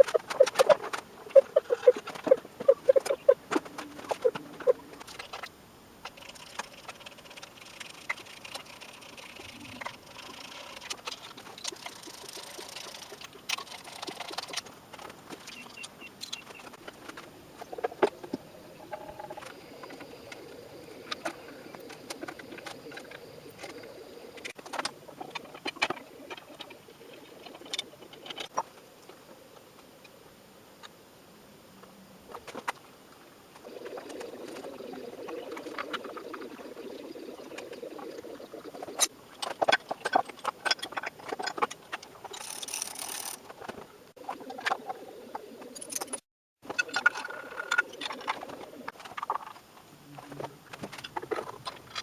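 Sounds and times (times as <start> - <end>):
low background hiss: 0.0 - 39.4.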